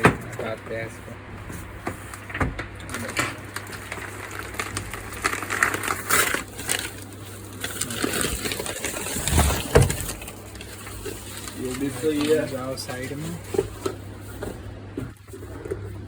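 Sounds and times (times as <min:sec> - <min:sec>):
packaging crinkling: 0:02.0 - 0:14.6.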